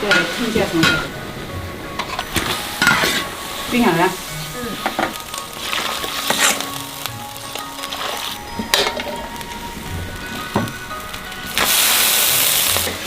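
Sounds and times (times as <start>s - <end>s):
food sizzling in a wok: 0.0s - 13.0s
spatula scraping a wok: 2.0s - 9.4s.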